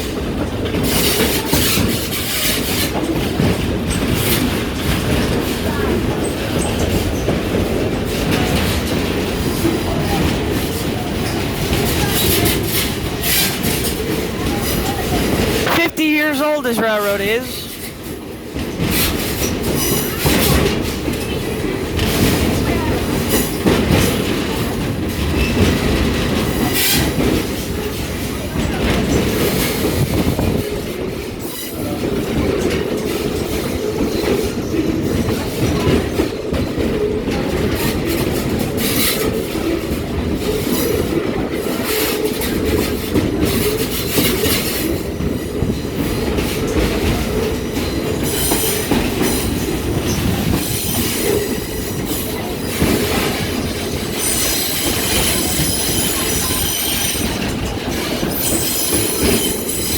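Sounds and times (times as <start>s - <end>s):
train wheels on rails: 0.0s - 15.4s, 31.8s - 59.9s.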